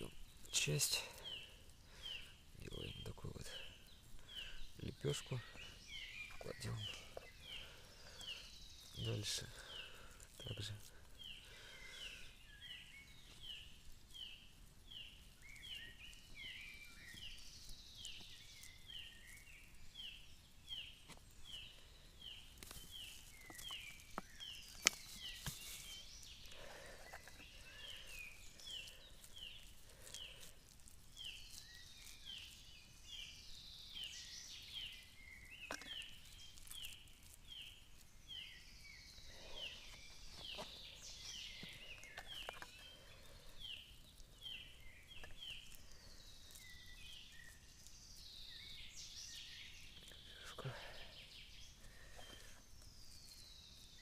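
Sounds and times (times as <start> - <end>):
soft knocks and handling noise: 41.6 - 42.8.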